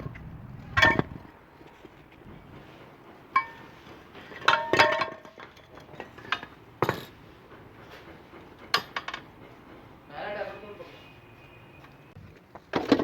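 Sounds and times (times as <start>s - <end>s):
metal tools clinking and knocking: 4.3s - 7.2s.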